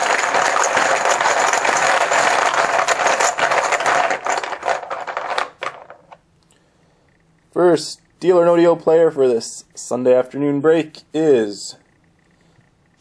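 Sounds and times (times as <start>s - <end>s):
chips rattling in container: 0.0s - 6.2s.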